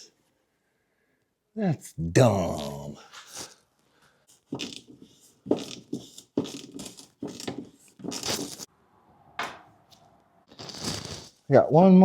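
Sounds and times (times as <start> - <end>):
hand tools rasping: 4.3 - 8.7.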